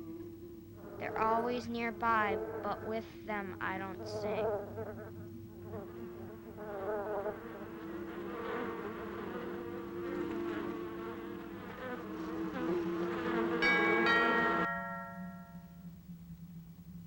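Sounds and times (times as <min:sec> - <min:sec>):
bees buzzing: 0:00.0 - 0:14.7
bell-like chime ringing: 0:13.6 - 0:16.0.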